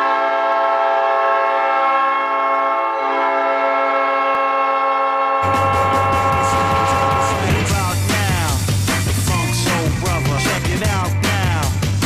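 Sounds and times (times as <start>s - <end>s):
goal horn blast: 0.0s - 8.1s.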